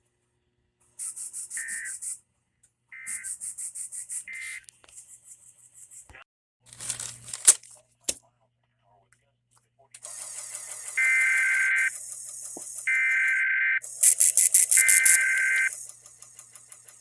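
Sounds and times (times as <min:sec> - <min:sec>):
screechy two-tone data bursts: 0:01.6 - 0:02.2, 0:03.0 - 0:03.4, 0:04.2 - 0:04.6, 0:10.6 - 0:16.0
crackling radio static: 0:11.0 - 0:12.0, 0:12.9 - 0:15.8
sharp click: 0:14.0 - 0:15.8.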